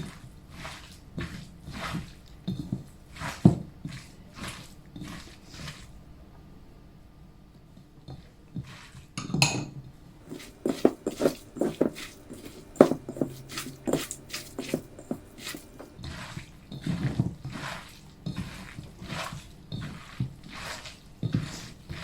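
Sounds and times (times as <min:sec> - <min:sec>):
hands squishing batter in a bowl: 0:00.0 - 0:06.0, 0:08.1 - 0:09.2, 0:10.2 - 0:22.0
knocks against bowl: 0:09.2 - 0:09.7.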